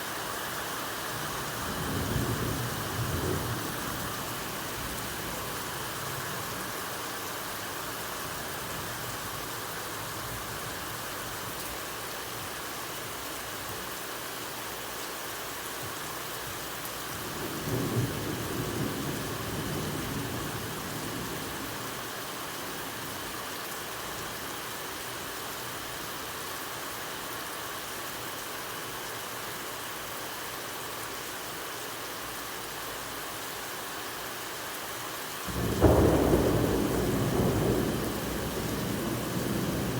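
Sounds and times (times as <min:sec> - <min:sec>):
rain hissing: 0:35.0 - 0:39.9
thunder rumbling: 0:35.5 - 0:39.9.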